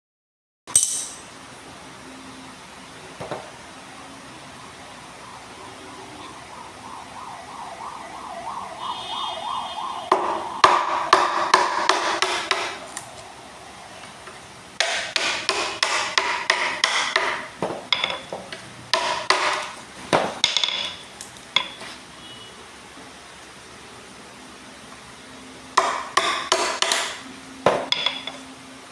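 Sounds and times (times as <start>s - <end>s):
hammer striking wood: 10.1s - 12.9s, 14.8s - 21.0s, 25.8s - 28.3s.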